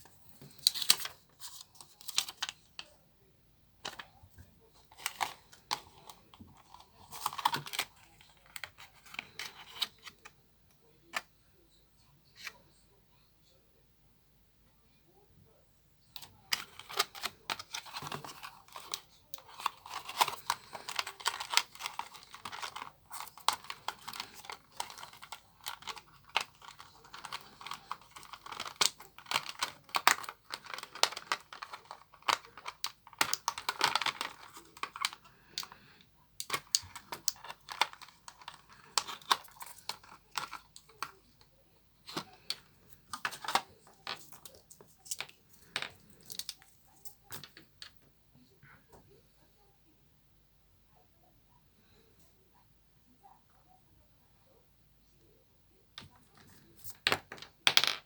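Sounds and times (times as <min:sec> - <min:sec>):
packaging crinkling and tearing: 0:00.5 - 0:02.5, 0:16.6 - 0:35.2.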